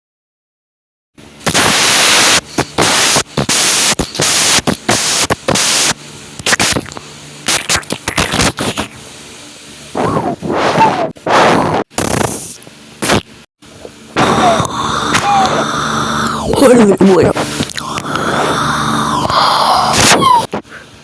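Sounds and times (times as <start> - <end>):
hissing blasts and whooshes: 1.4 - 6.8.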